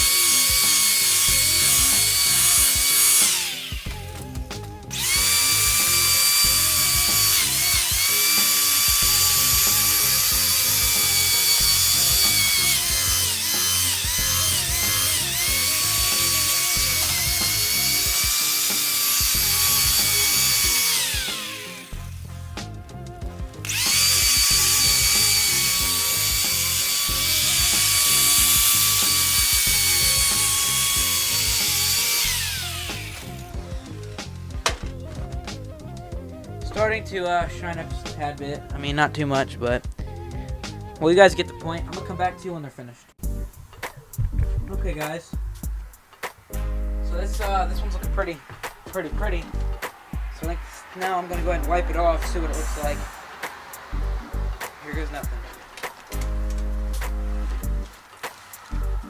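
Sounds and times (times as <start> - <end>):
electric buffer motor whining: 0.0 - 37.1.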